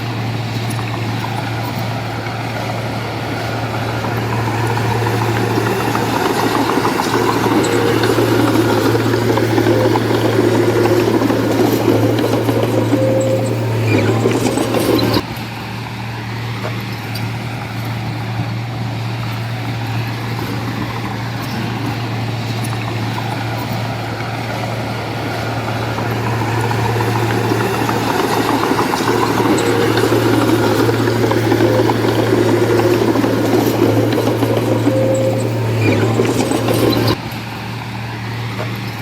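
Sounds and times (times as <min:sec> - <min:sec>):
heavy diesel engine droning: 0:00.0 - 0:39.0.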